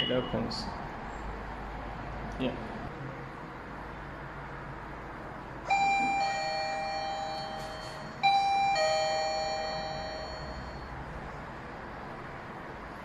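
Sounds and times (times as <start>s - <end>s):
two-note doorbell chime: 5.7s - 11.0s.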